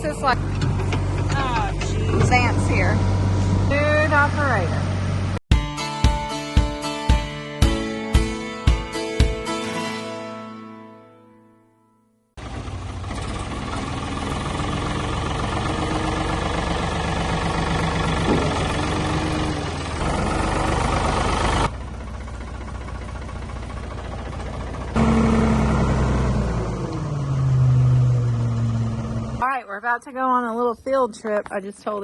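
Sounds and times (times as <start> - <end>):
backhoe engine running: 0.0 - 5.4, 12.4 - 29.5.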